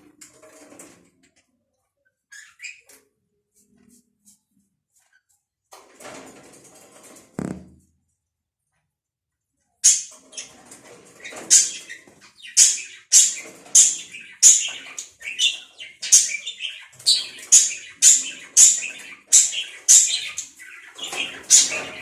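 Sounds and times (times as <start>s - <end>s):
budgerigars chirping: 11.3s - 22.0s.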